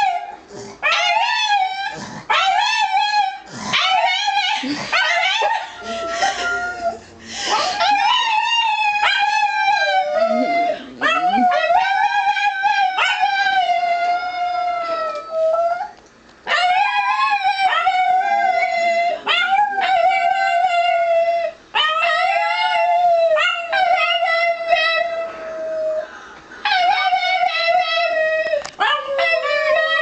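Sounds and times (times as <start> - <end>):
dog howling: 0.0 - 30.0.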